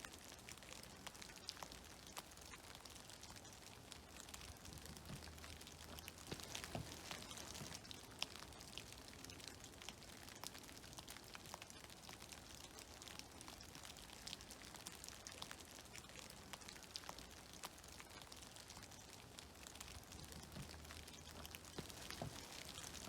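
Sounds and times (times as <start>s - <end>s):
water drops pattering: 0.5s - 12.8s, 15.2s - 23.0s.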